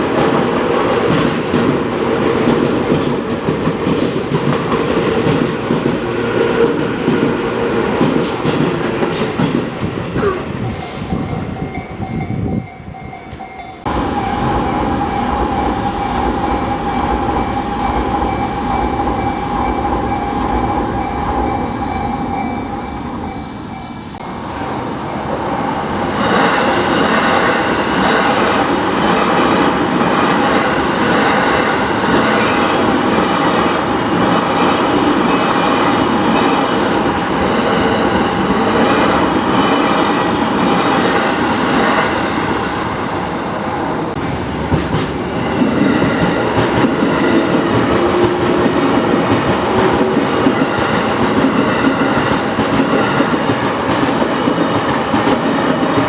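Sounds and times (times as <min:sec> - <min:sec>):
electric trains passing: 0:00.0 - 0:56.0
crossing warning bell: 0:10.6 - 0:24.3.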